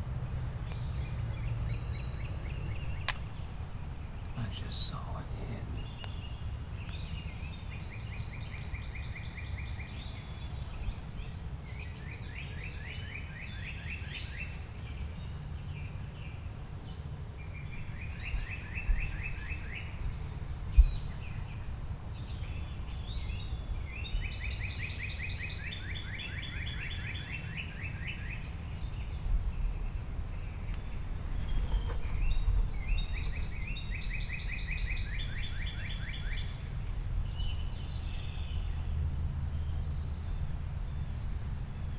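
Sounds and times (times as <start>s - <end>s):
low outdoor rumble: 0.0s - 11.7s, 25.6s - 41.9s
songbirds singing trills: 0.0s - 41.9s.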